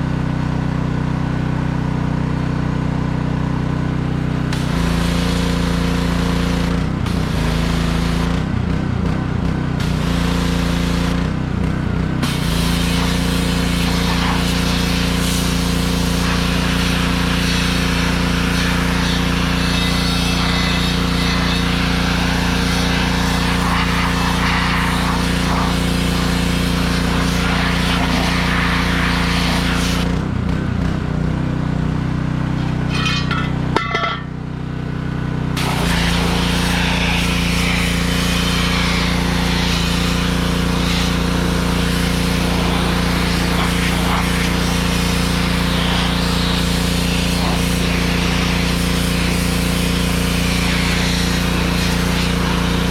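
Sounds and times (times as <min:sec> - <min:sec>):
pressure washer engine running: 0:00.0 - 0:52.9
water spraying from wand: 0:12.2 - 0:30.1, 0:35.6 - 0:52.9.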